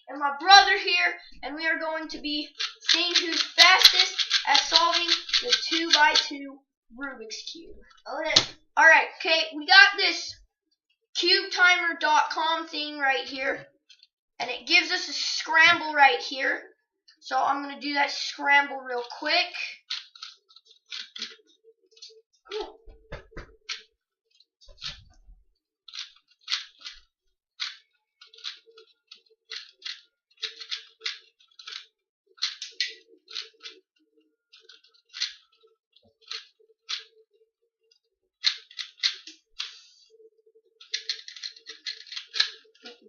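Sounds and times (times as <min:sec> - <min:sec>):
puzzle cube clicking as turned: 0:02.5 - 0:06.3, 0:19.9 - 0:21.4, 0:25.9 - 0:27.0, 0:27.6 - 0:33.8, 0:34.6 - 0:35.5, 0:36.2 - 0:37.1, 0:38.4 - 0:39.8, 0:40.8 - 0:43.0.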